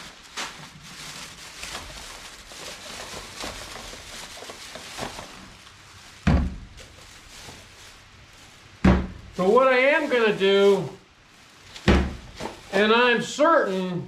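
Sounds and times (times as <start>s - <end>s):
handling taps and rustles: 2.6s - 7.7s
heavy thump: 6.2s - 6.7s, 8.8s - 9.3s, 11.9s - 12.6s.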